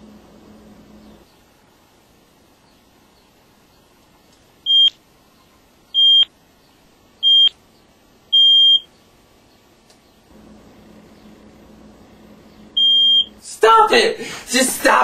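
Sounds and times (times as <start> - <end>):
smoke alarm beeping: 4.7 - 4.9, 6.0 - 6.3, 7.2 - 7.5, 8.3 - 8.9, 12.8 - 13.4.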